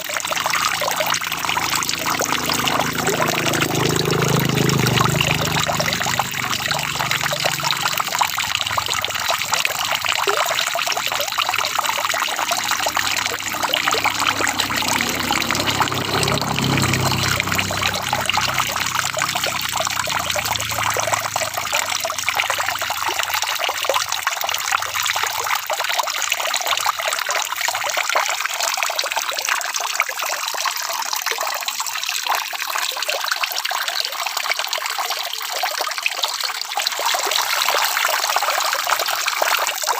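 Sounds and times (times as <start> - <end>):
low rumble: 0.2 - 23.1.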